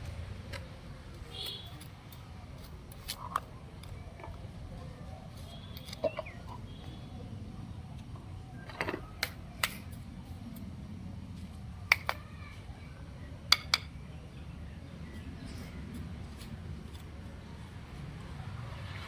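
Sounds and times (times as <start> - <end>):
steady low rumble: 0.0 - 5.7, 6.3 - 11.9.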